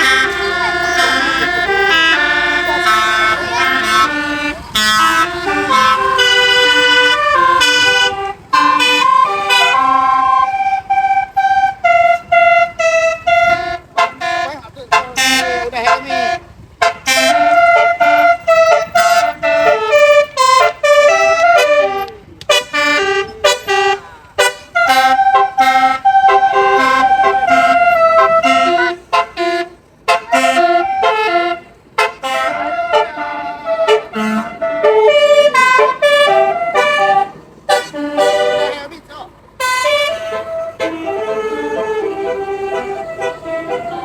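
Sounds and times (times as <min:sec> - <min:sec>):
multi-tone bus air horn melody: 0:00.0 - 0:44.0.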